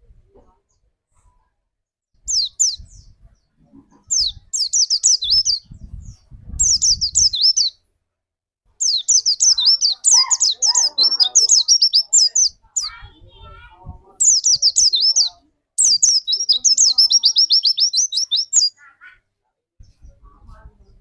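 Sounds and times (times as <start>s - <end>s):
songbird high falling chirps: 2.3s - 3.1s, 4.1s - 5.7s, 6.6s - 7.8s, 8.8s - 13.0s, 14.2s - 18.7s.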